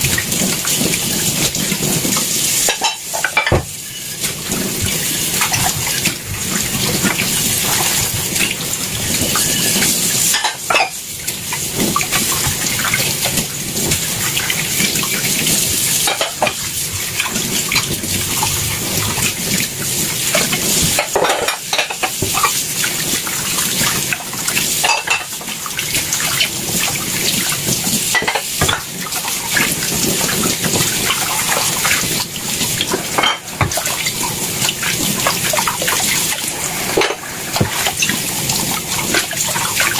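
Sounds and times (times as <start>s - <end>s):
tap water running into sink: 0.0s - 39.9s
dishes and cutlery clinking: 2.6s - 4.1s, 9.2s - 11.0s, 16.0s - 16.6s, 20.4s - 22.6s, 24.8s - 25.4s, 28.1s - 28.9s, 32.8s - 33.9s, 36.6s - 38.2s.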